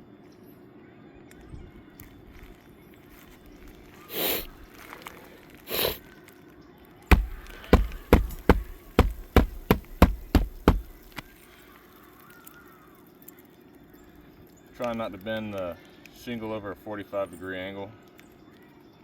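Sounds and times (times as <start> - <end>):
hammer driving nails: 7.1 - 11.2.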